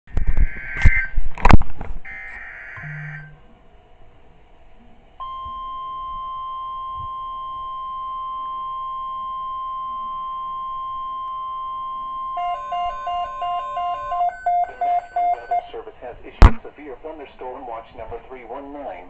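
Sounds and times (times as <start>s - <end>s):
steady high alarm tone: 2.1s - 3.4s, 5.2s - 15.7s
fast choppy electronic beeps: 12.4s - 15.7s.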